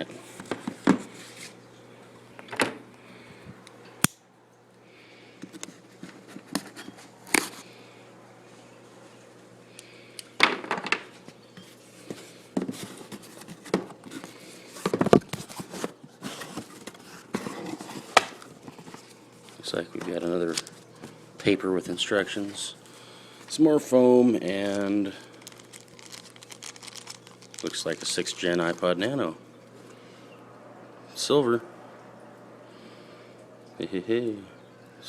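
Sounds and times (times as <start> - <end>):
cardboard and paper rustling: 12.1 - 21.2, 24.5 - 29.0.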